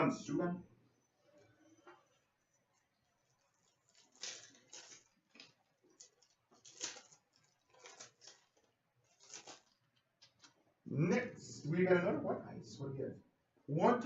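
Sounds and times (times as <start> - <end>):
trading cards rustling: 3.2 - 10.6.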